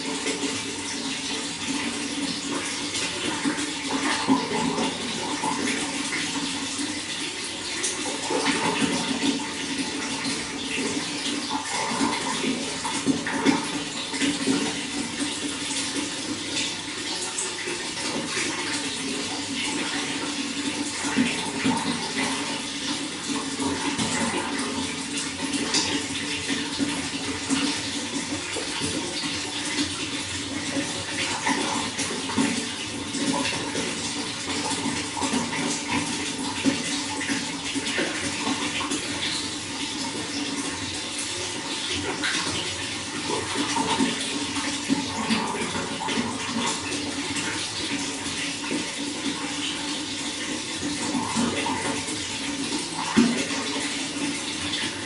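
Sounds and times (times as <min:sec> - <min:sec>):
running water splashing: 0:00.0 - 0:55.0.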